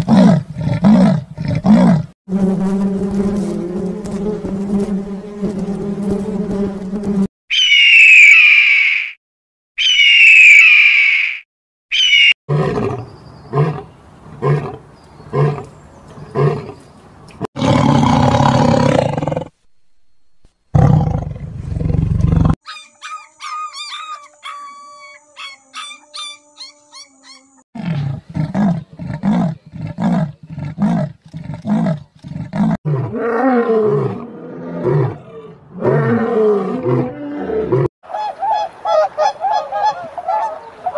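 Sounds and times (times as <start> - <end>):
high falling calls: 7.5 - 9.2, 9.8 - 12.4, 22.6 - 27.6
loud noisy animal calls: 7.5 - 9.2, 9.8 - 13.0
animal roars: 17.5 - 19.5, 20.7 - 22.6, 27.8 - 37.9
high chirping: 22.7 - 27.6.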